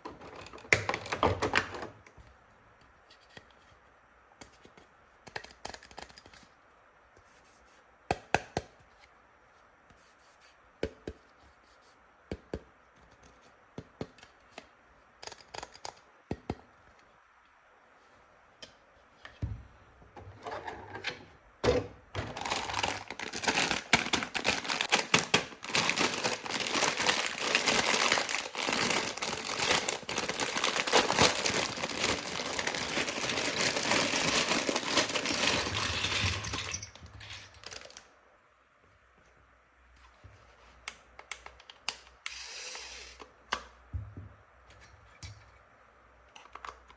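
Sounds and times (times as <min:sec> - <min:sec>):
plastic toys clicking and clattering: 0:22.2 - 0:38.0
packaging rustling: 0:22.2 - 0:38.1.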